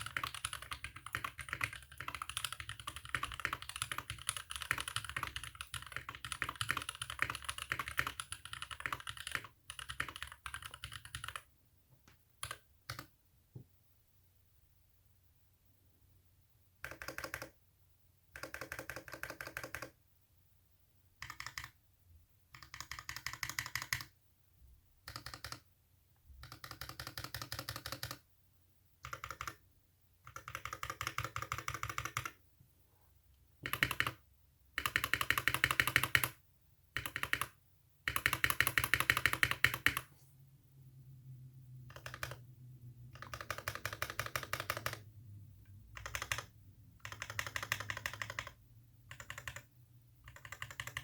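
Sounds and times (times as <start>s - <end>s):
mechanical keyboard typing: 0.0s - 11.5s, 12.4s - 13.1s, 16.8s - 17.6s, 18.3s - 20.0s, 21.2s - 21.8s, 22.5s - 24.2s, 25.0s - 25.7s, 26.4s - 28.2s, 29.0s - 29.6s, 30.2s - 32.4s, 33.6s - 34.2s, 34.8s - 40.1s, 41.8s - 42.4s, 43.1s - 45.1s, 45.9s - 51.0s.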